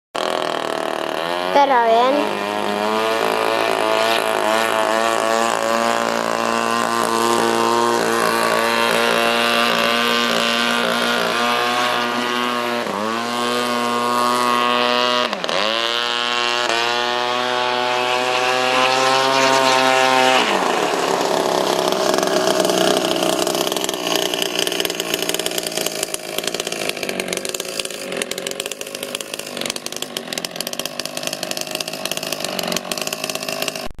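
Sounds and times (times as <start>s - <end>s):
two-stroke engine revving: 0.2s - 34.0s.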